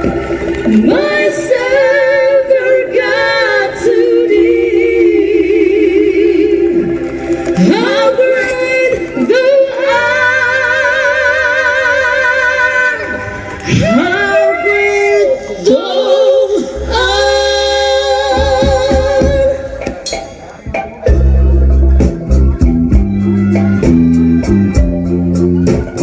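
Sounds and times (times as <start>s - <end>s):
unaccompanied voices singing: 0.0s - 20.0s.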